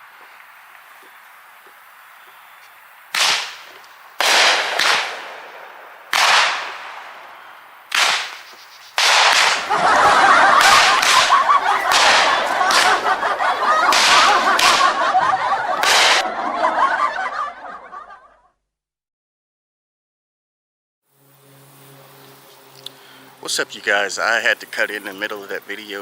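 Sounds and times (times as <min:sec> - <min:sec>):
firework cake cracks: 0:06.1 - 0:09.8, 0:10.4 - 0:14.9.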